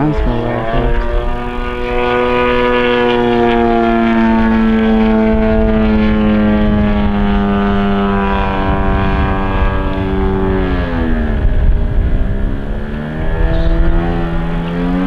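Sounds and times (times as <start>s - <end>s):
model plane engine running: 0.0s - 15.0s.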